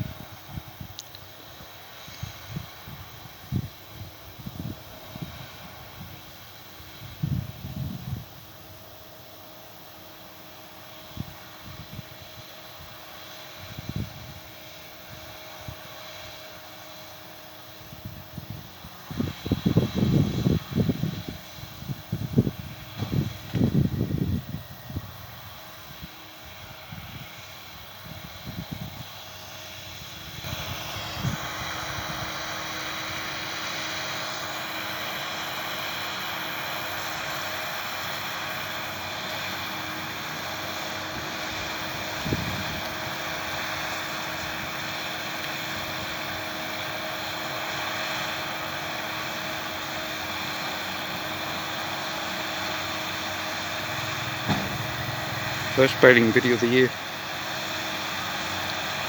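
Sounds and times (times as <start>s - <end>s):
wind gusts on microphone: 0.0s - 9.0s, 13.6s - 16.0s, 17.7s - 38.3s, 40.2s - 47.6s
tractor engine drone: 0.0s - 59.0s.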